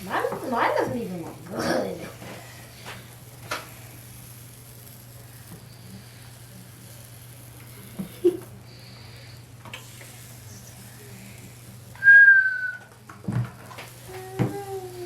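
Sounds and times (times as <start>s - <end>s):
short high whistling note: 12.0s - 12.8s.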